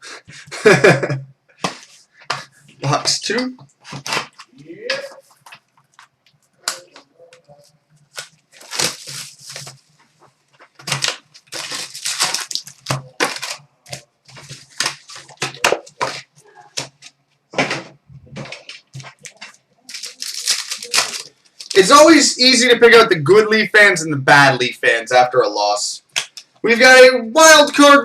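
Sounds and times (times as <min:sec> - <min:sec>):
packaging crinkling and ripping: 0:03.8 - 0:04.5, 0:08.0 - 0:09.9, 0:10.6 - 0:17.2, 0:18.4 - 0:21.9.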